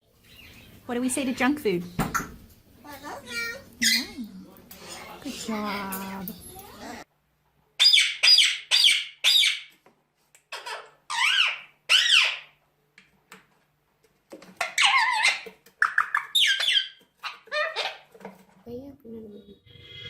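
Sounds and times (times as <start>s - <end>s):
parrot squawking and whistling: 3.8s - 4.2s, 7.8s - 9.7s, 10.5s - 12.6s, 14.6s - 18.1s.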